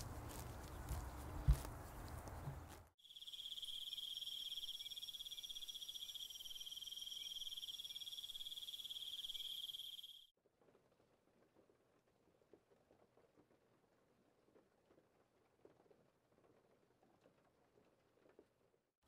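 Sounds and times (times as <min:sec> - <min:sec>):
high-pitched insect trill: 0:03.0 - 0:10.3.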